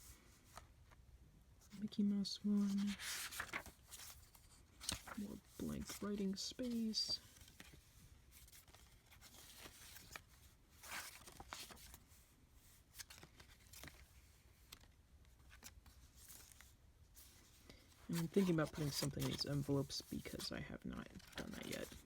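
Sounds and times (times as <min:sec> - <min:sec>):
page flip: 0:02.6 - 0:12.0, 0:12.9 - 0:16.7, 0:18.2 - 0:20.5
paper pages rustling: 0:02.6 - 0:22.0.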